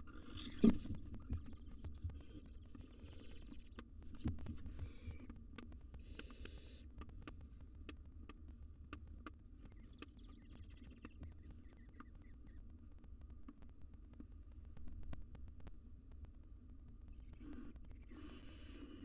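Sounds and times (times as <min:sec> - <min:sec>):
faint low hum: 0:00.0 - 0:19.0
owls hissing: 0:17.4 - 0:19.0.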